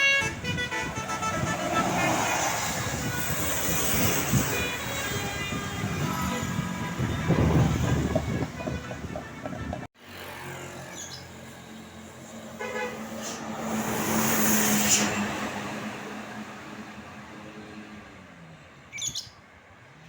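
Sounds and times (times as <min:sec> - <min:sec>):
brief horn blast: 0:00.0 - 0:09.9
bus multi-tone musical horn: 0:00.0 - 0:09.9, 0:12.5 - 0:15.4
bus engine: 0:00.0 - 0:20.0
traffic noise: 0:00.0 - 0:20.0
vehicle engine drone: 0:00.3 - 0:18.9.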